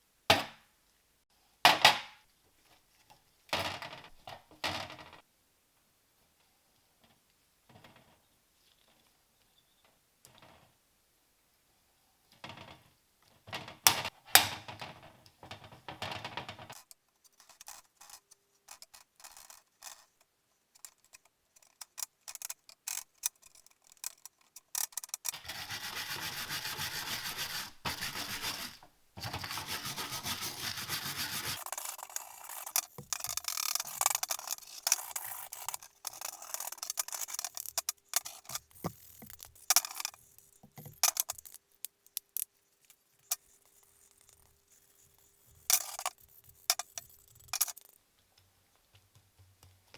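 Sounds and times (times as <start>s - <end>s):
rubbing and scraping on model car: 15.9s - 48.0s.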